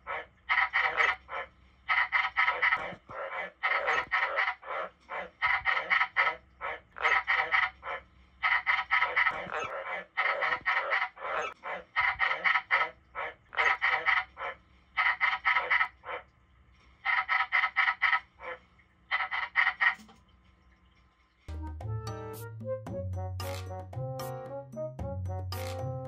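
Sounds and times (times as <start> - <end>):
tree frogs croaking: 0.0 - 16.4, 17.0 - 20.1.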